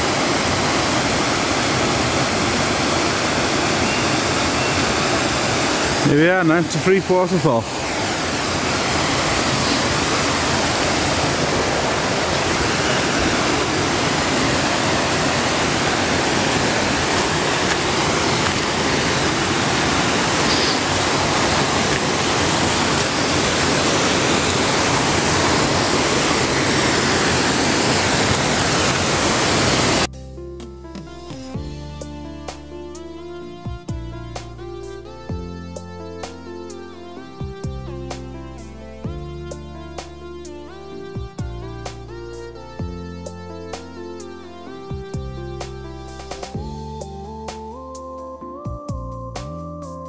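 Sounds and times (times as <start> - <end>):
waterfall roaring: 0.0 - 30.1
background music: 30.1 - 50.0.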